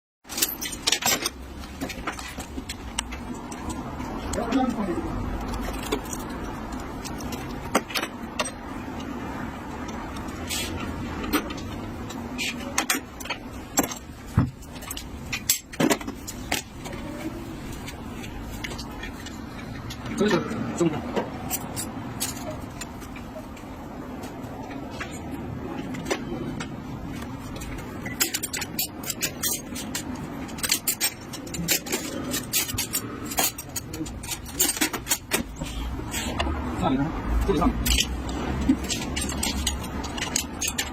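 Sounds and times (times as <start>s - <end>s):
metal tools clinking: 0.3s - 9.2s, 9.8s - 20.6s, 21.2s - 23.5s, 27.5s - 36.4s, 37.5s - 40.9s
hand tools clinking on metal: 27.7s - 35.8s, 37.5s - 40.9s.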